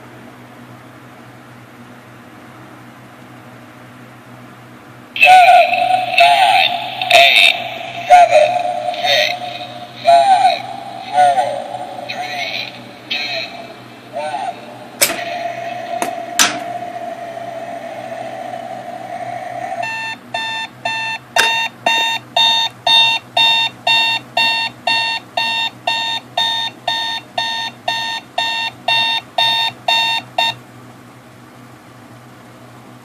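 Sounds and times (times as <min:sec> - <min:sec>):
steady tone with rising hiss: 0:05.2 - 0:20.3
electronic beeping alarm: 0:19.8 - 0:30.6
alarm clock click: 0:19.9 - 0:30.6.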